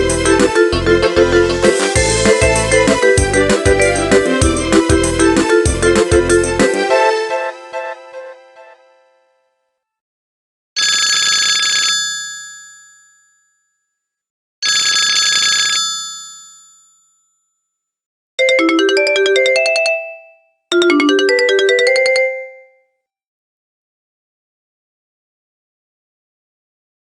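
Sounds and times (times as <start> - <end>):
bell-like ringtone chime: 10.8 - 13.7, 14.8 - 17.4, 18.4 - 22.9.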